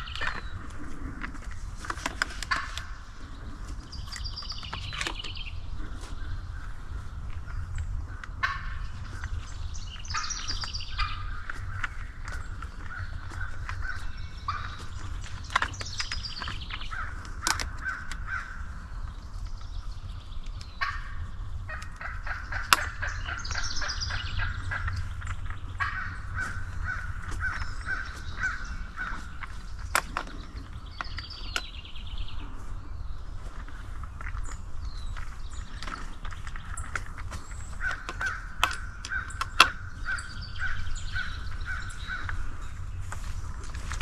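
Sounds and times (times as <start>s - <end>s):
turkey gobbling rattles: 0.0s - 32.5s, 33.4s - 44.0s
turkeys calling: 0.0s - 44.0s
sharp clicks: 10.1s - 18.5s.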